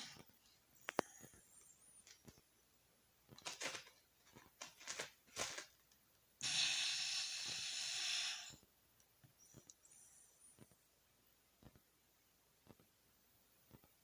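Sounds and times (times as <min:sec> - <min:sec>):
dog hissing breath out: 0:06.4 - 0:08.6.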